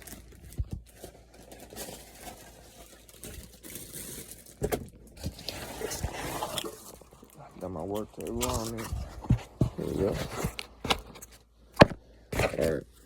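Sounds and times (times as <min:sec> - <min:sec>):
packaging rustling and crinkling: 0:00.0 - 0:11.5.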